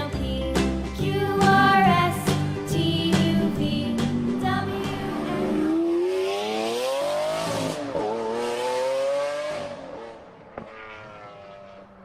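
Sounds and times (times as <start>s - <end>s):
car engine revving: 1.2s - 12.0s.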